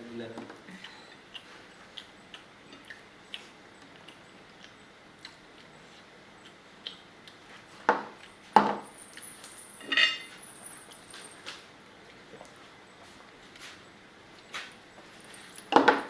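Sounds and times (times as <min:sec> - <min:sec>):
dish clink with ringing tone: 0:08.6 - 0:11.5
plates and cutlery clicking: 0:09.8 - 0:10.4.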